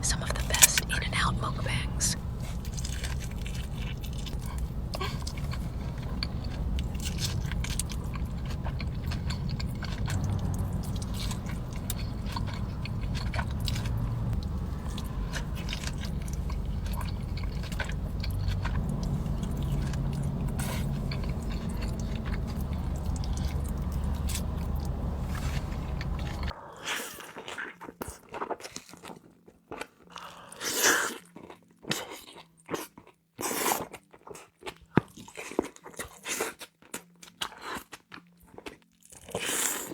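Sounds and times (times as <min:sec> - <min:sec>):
steady low hum: 0:00.0 - 0:26.5
biting chewing and crunching food: 0:00.0 - 0:39.9.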